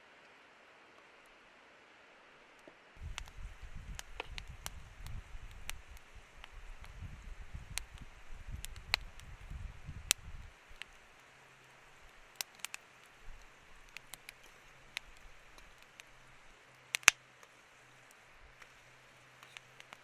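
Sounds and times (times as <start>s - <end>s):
small sharp clicks and taps: 2.6s - 9.5s, 12.0s - 16.1s, 16.8s - 20.0s.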